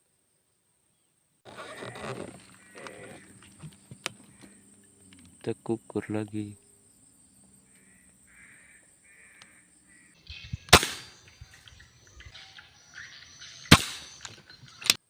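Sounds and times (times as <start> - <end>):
faint insect chirring: 0.0 - 15.0
sharp gunshots: 10.6 - 11.5, 13.7 - 14.4.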